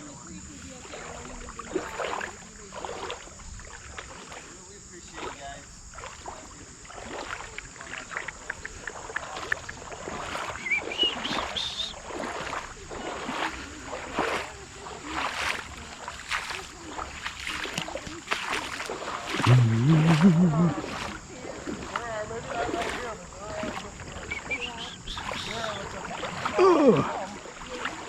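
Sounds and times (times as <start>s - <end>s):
creek water splashing: 0.0s - 28.0s
low voice-like sound: 19.4s - 20.8s.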